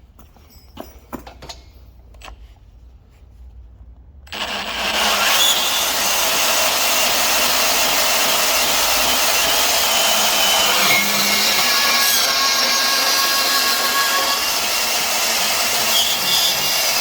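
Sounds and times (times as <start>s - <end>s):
band saw cutting steel: 4.3s - 17.0s.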